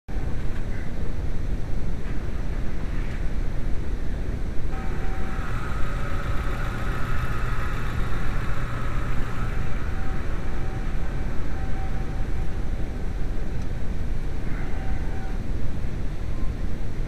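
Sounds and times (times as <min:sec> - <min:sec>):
steady whine: 0:03.6 - 0:16.6.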